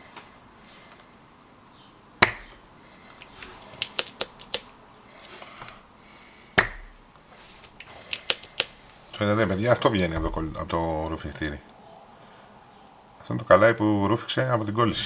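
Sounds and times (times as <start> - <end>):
light plastic clicks: 2.2 - 4.7, 7.7 - 8.8
solder sucker snapping: 2.2 - 4.7, 6.6 - 7.1, 7.7 - 8.8.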